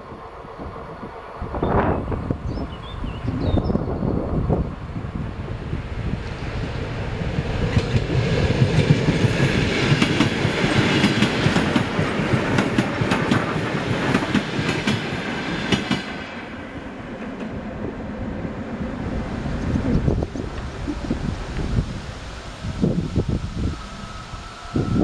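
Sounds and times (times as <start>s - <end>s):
train wheels clicking over rails: 7.4s - 16.3s.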